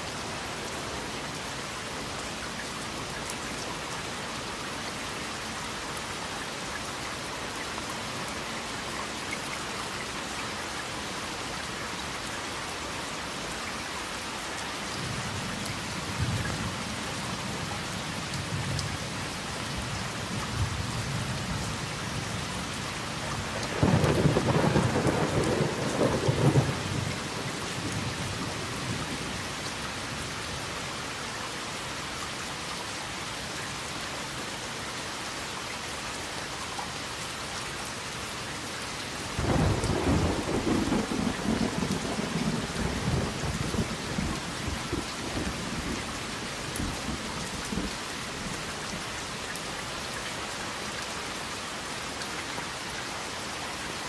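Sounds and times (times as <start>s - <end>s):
steady rain falling: 0.0s - 54.0s
thunder rumbling: 23.6s - 28.0s, 39.4s - 46.0s.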